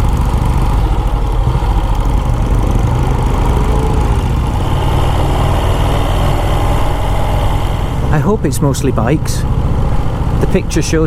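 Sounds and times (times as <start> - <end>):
motorcycle engine running: 0.0 - 11.0.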